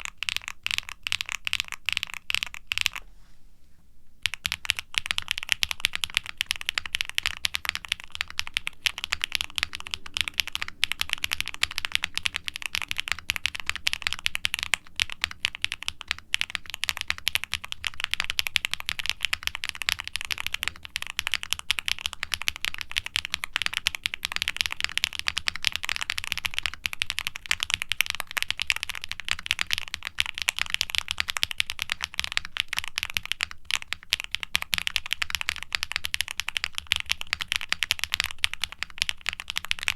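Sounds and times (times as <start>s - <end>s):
fast mechanical keyboard typing: 0.0s - 3.0s, 4.2s - 39.9s.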